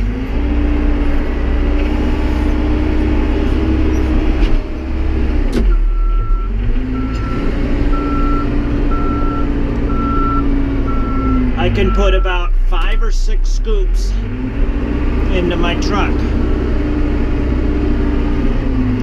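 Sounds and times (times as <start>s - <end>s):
backhoe loader engine running: 0.0s - 19.0s
reversing beeper: 5.7s - 13.1s.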